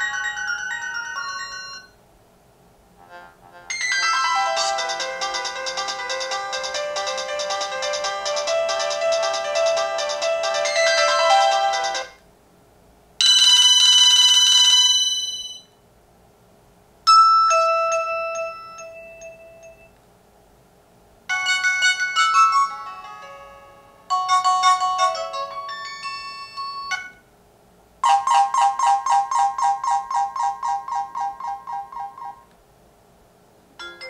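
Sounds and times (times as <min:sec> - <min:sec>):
short ringtone melodies: 0:00.0 - 0:02.0, 0:03.7 - 0:12.2, 0:13.2 - 0:15.7, 0:17.1 - 0:19.9, 0:21.3 - 0:27.2
quickly repeating tune: 0:03.6 - 0:12.1.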